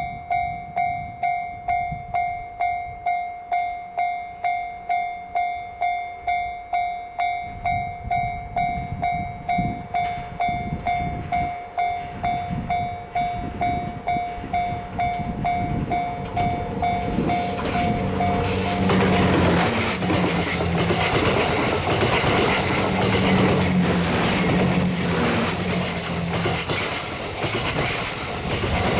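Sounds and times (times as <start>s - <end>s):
level-crossing bell dinging: 0.0s - 27.5s
train engine hum: 4.8s - 28.9s
train rumbling past: 7.2s - 28.9s.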